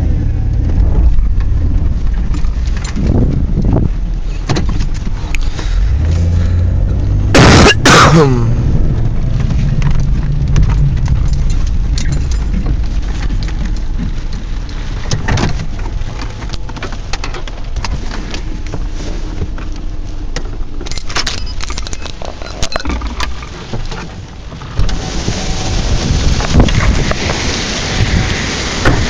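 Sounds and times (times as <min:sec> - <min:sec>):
wind buffeting microphone: 0:00.3 - 0:05.2, 0:24.7 - 0:29.0
rattling clicks: 0:20.4 - 0:24.1.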